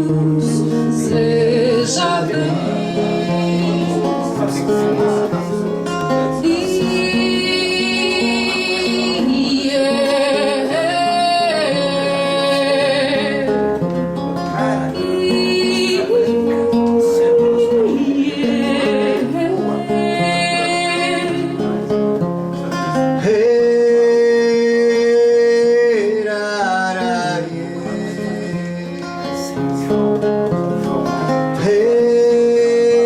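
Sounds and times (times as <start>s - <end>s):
guitar playing chords: 0.0s - 33.0s.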